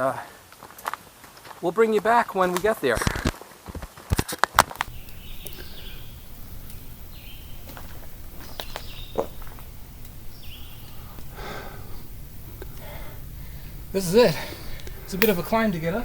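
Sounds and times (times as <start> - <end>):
bird chirping: 4.8 - 16.0
low steady rumble: 4.8 - 16.0
sharp clicks: 4.8 - 16.0.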